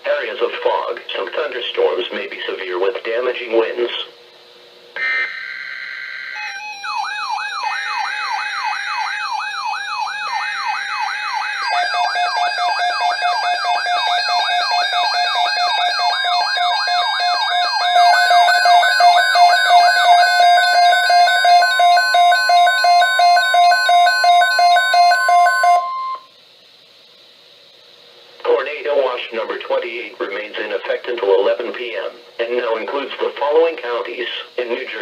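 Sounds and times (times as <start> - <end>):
rasping data bursts: 5.0 - 26.2
electronic siren sweeping: 5.0 - 26.3
warbling alarm tones: 5.0 - 26.3.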